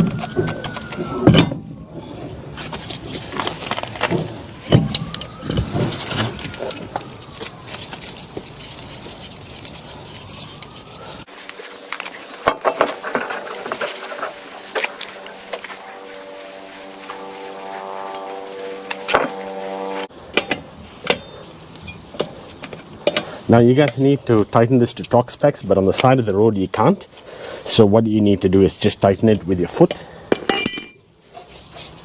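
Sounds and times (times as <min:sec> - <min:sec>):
metallic clinks and knocks: 0:30.3 - 0:31.2.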